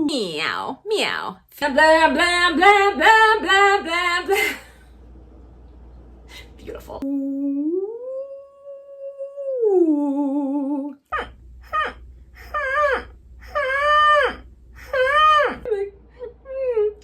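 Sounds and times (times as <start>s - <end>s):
woman humming vocal exercise: 7.0s - 17.0s.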